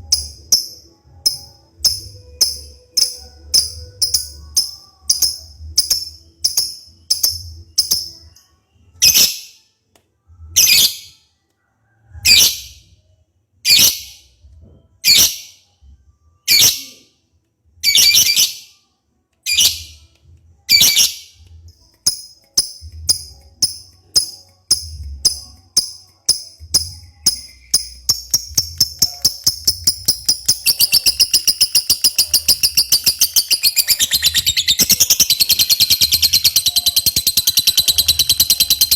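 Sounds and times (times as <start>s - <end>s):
lovebird chirping: 0.0s - 9.5s, 20.7s - 38.9s.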